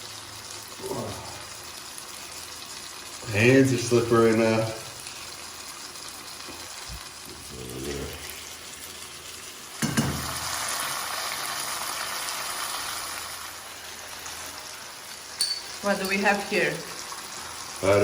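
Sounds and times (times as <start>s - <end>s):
vegetables sizzling in a frying pan: 0.0s - 18.0s
knock: 9.8s - 10.3s.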